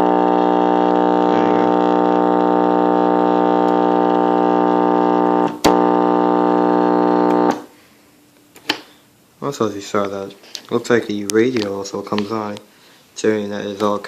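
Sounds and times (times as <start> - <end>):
clock radio buzzer alarm: 0.0 - 7.7.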